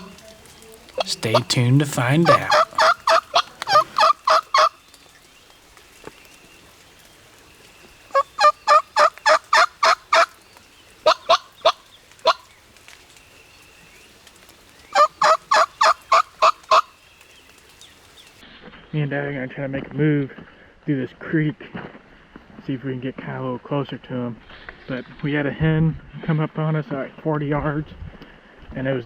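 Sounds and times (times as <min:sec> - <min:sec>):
turkey yelping: 0:02.2 - 0:04.8, 0:08.1 - 0:10.3, 0:11.0 - 0:12.4, 0:14.9 - 0:16.9.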